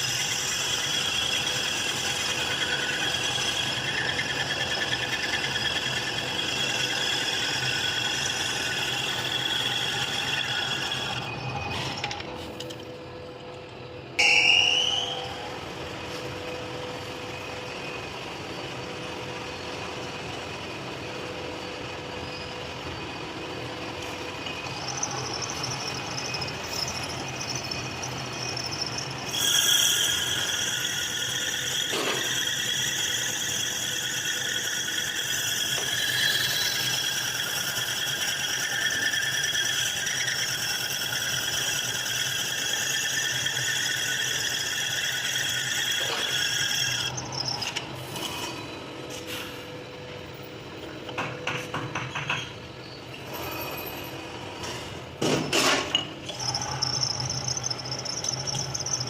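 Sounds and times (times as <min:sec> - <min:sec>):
machine tool cutting metal: 0:00.0 - 0:12.9, 0:24.0 - 0:48.7, 0:53.2 - 0:59.0
rising squeal: 0:00.0 - 0:55.2, 0:55.9 - 0:59.0.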